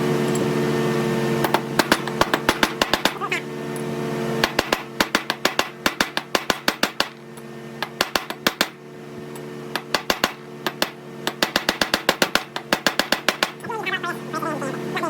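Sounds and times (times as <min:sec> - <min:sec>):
steady low hum: 0:00.0 - 0:15.0
rapid hammer blows on metal: 0:01.4 - 0:03.4, 0:04.4 - 0:07.2, 0:07.8 - 0:08.9, 0:09.7 - 0:13.7.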